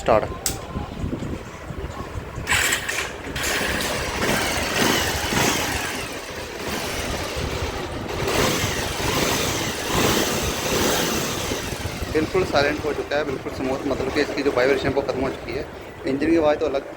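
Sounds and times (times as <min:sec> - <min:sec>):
motorcycle engine starting and idling: 0:02.4 - 0:15.4.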